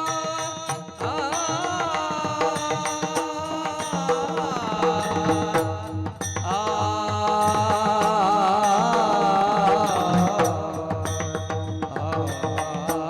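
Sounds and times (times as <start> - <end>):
person singing a wavering melody: 0.0 - 13.0.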